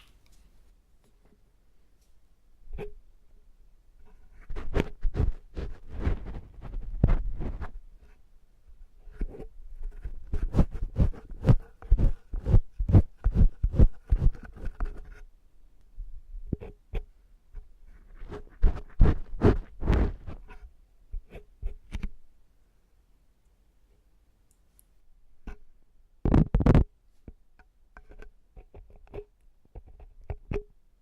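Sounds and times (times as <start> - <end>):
ear tool scraping and tapping: 2.0 - 3.0, 4.0 - 8.2, 9.0 - 15.3, 16.5 - 22.2, 24.8 - 30.8.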